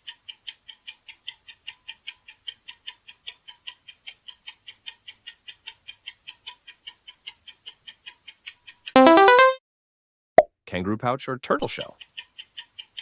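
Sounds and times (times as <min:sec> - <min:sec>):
fast clock ticking: 0:00.0 - 0:08.8, 0:11.7 - 0:13.0.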